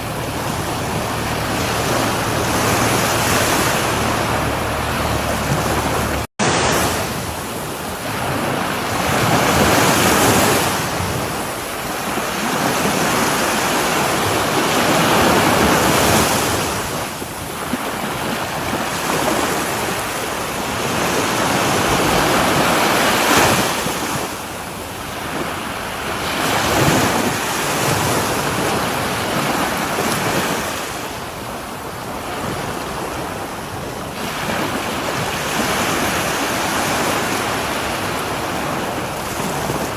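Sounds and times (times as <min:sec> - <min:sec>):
sea waves breaking on shore: 0:00.0 - 0:39.9.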